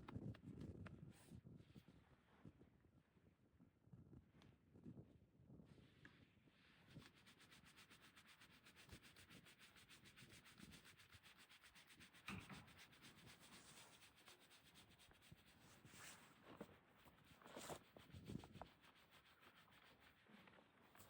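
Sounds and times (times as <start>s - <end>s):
fast rubbing strokes: 6.9s - 21.0s.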